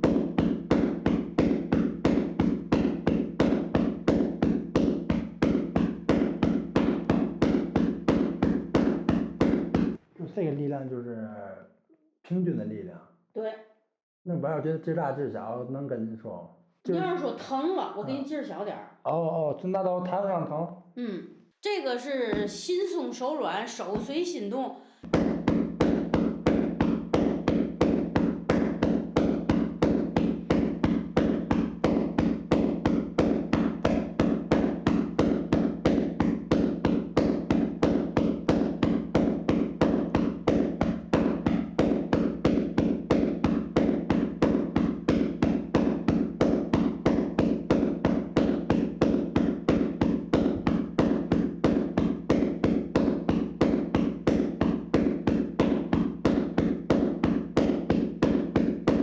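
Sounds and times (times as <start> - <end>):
hands slapping body in massage: 25.1 - 59.0.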